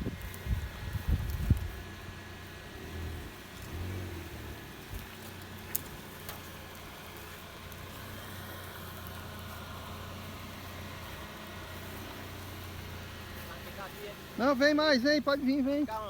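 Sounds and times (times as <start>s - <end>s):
car engine running slowly: 0.0s - 16.0s.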